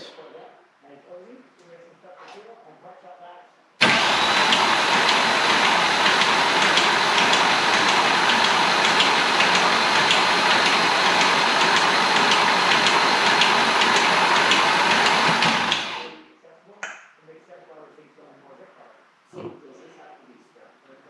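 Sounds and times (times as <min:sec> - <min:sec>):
starter motor cranking engine: 0:03.8 - 0:16.2.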